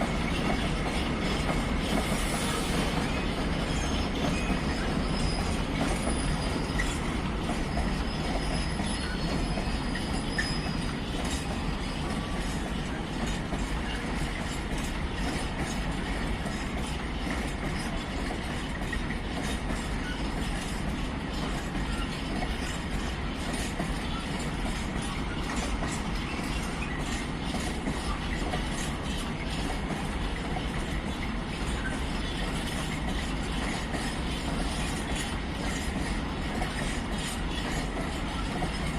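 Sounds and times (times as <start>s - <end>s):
train wheel rumble and clatter: 0.0s - 38.9s
high wheel squeals: 2.1s - 12.0s.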